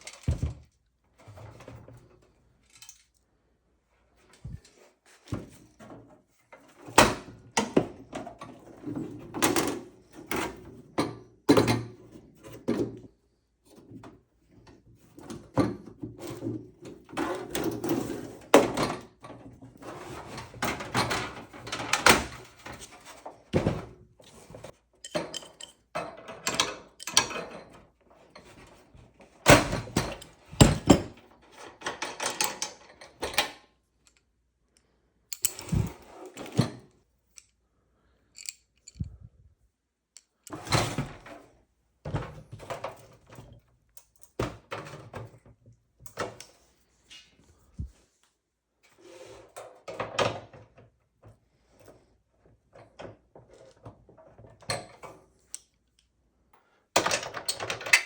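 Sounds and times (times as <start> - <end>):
metal parts knocking and clinking: 25.0 - 27.7, 35.3 - 36.0, 38.4 - 39.1, 57.0 - 58.0.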